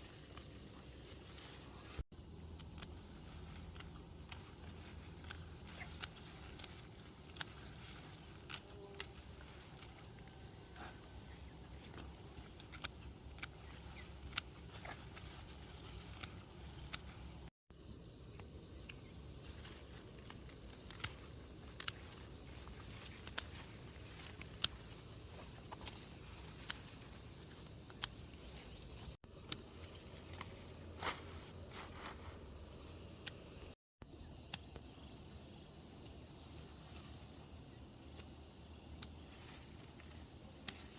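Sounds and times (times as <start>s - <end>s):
insects chirring: 0.0s - 40.9s.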